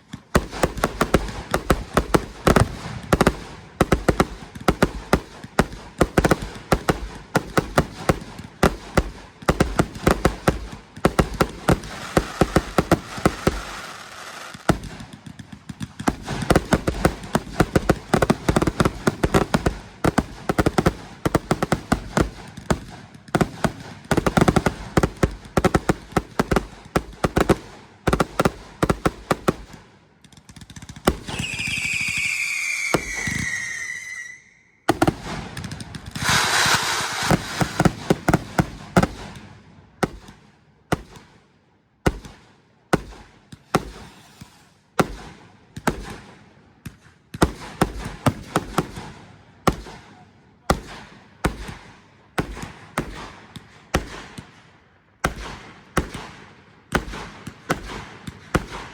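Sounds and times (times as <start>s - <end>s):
fireworks crackling: 0.0s - 39.5s, 43.6s - 44.8s
firework bangs: 0.3s - 29.8s, 30.7s - 40.3s
firework whistle: 11.8s - 14.7s, 31.2s - 34.9s, 36.0s - 38.0s
loud hiss: 11.8s - 14.7s, 36.1s - 38.0s.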